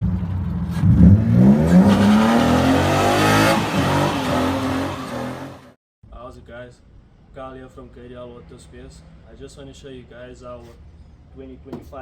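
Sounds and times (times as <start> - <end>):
car engine revving: 0.0 - 5.8.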